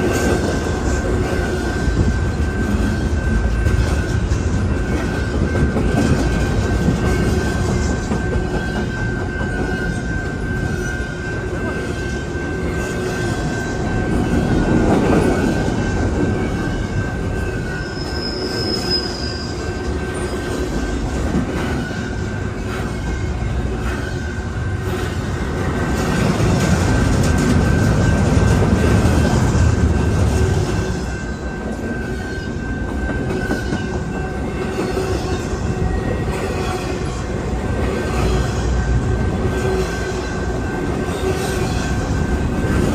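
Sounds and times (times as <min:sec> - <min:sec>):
train wheels rumbling on rails: 0:00.0 - 0:42.9
wheel squeal: 0:17.6 - 0:20.9.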